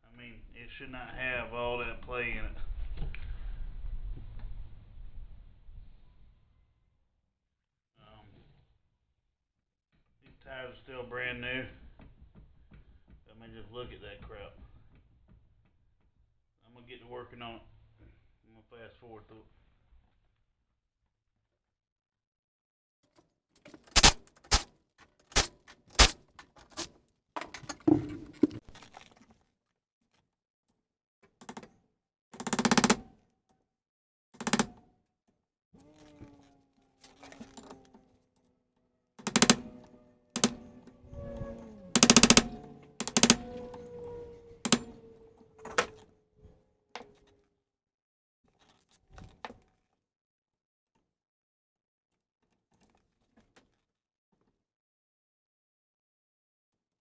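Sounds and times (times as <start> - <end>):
rapid hammering: 24.0 - 24.6, 25.4 - 26.2, 39.3 - 40.7, 42.0 - 43.6.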